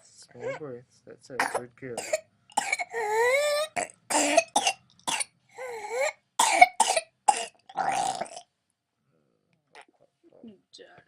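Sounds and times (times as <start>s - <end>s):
infant coughing: 1.4s - 7.6s.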